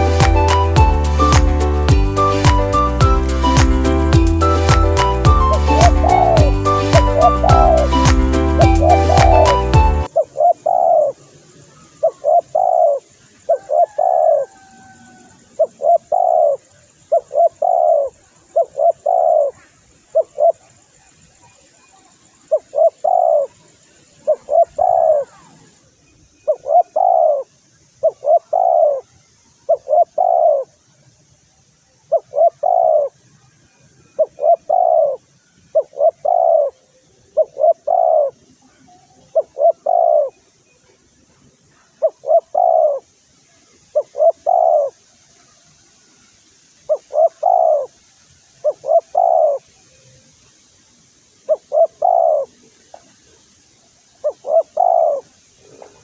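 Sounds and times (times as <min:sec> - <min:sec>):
dove cooing: 0:00.0 - 0:11.3, 0:11.9 - 0:20.7, 0:22.5 - 0:23.6, 0:24.2 - 0:25.4, 0:26.5 - 0:29.1, 0:29.7 - 0:30.7, 0:32.1 - 0:33.2, 0:34.2 - 0:35.2, 0:35.8 - 0:40.4, 0:41.9 - 0:43.1, 0:43.9 - 0:45.0, 0:46.9 - 0:48.0, 0:48.6 - 0:49.7, 0:51.5 - 0:53.4, 0:54.2 - 0:56.0
faint high hiss: 0:00.0 - 0:56.0.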